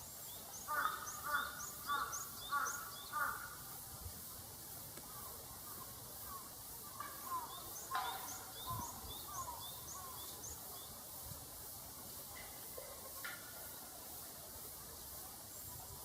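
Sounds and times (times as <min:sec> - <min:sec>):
birds singing: 0:00.0 - 0:03.6, 0:05.1 - 0:11.0
background hiss: 0:00.0 - 0:16.0.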